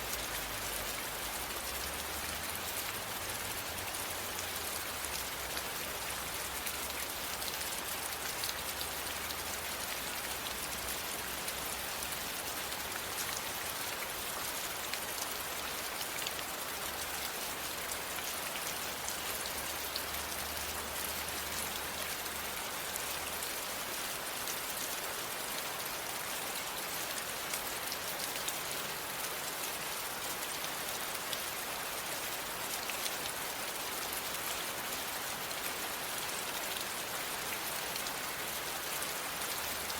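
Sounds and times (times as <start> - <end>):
rain pattering on a surface: 0.0 - 39.9.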